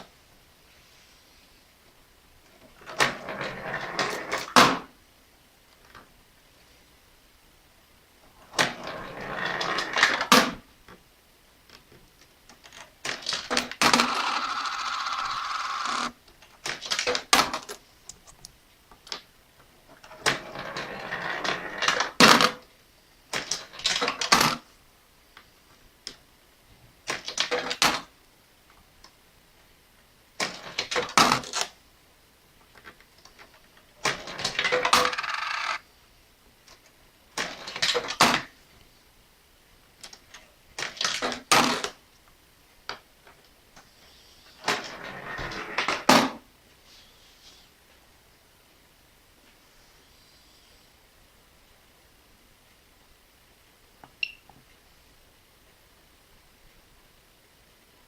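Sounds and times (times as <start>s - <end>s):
coins rattling through sorter: 34.1s - 35.8s
coins clinking as they land: 34.9s - 35.8s.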